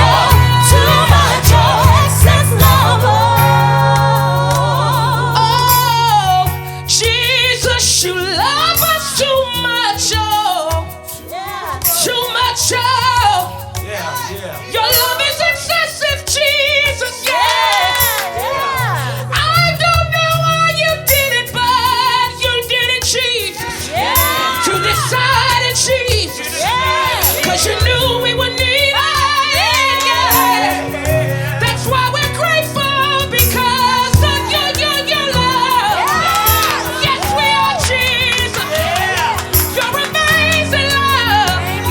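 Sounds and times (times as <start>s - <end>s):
held low bass notes: 0.0s - 6.6s
gospel band playing: 0.0s - 41.9s
person singing vocal runs: 0.0s - 41.9s.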